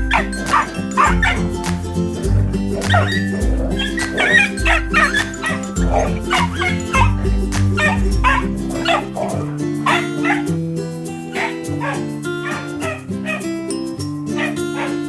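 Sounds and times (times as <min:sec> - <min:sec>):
dogs giving short high barks: 0:00.0 - 0:10.6, 0:11.3 - 0:13.5, 0:14.4 - 0:15.0
background music with bouncing bass: 0:00.0 - 0:15.0.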